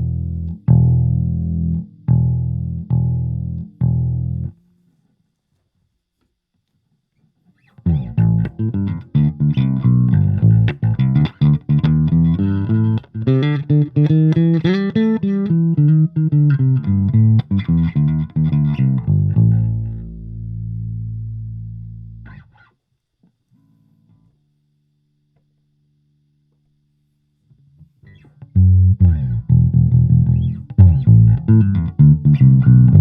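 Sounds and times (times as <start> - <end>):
electric bass plucked notes: 0.0 - 4.6, 7.8 - 22.6, 28.1 - 33.0.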